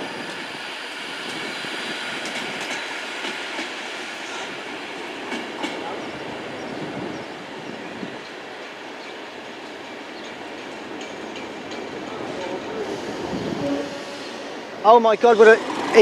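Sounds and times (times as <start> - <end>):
electric train rushing: 0.0 - 16.0
wheels clicking over rail joints: 9.0 - 13.0, 15.2 - 16.0.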